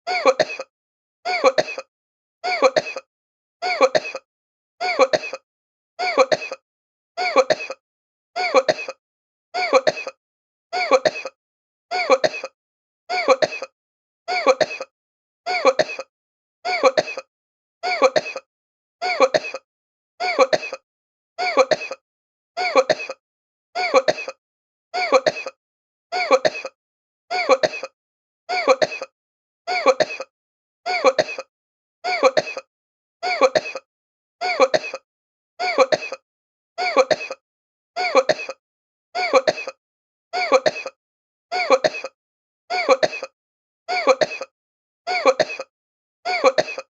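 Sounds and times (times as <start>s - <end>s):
person coughing: 0.1s - 0.7s, 1.3s - 1.9s, 2.5s - 3.1s, 3.7s - 5.4s, 6.0s - 6.6s, 7.2s - 7.8s, 8.4s - 9.0s, 9.6s - 10.2s, 10.8s - 11.4s, 12.0s - 13.7s, 14.3s - 14.9s, 15.5s - 16.1s, 16.7s - 19.6s, 20.2s - 20.8s, 21.4s - 22.0s, 22.6s - 23.2s, 23.8s - 24.4s, 25.0s - 25.6s, 26.2s - 29.1s, 29.7s - 30.3s, 30.9s - 31.5s, 32.1s - 35.0s, 35.6s - 36.2s, 36.8s - 37.4s, 38.0s - 38.6s, 39.2s - 39.8s, 40.4s - 41.0s, 41.6s - 43.3s, 43.9s - 44.5s, 45.1s - 45.7s, 46.3s - 46.9s.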